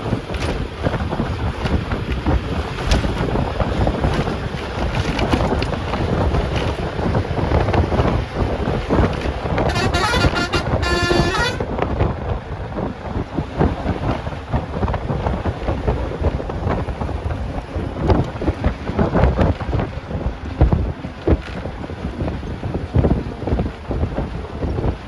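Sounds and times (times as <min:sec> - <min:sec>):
bus engine rumble: 0:00.0 - 0:25.0
wind rush: 0:00.0 - 0:25.0
vehicle horn honking: 0:09.6 - 0:11.7.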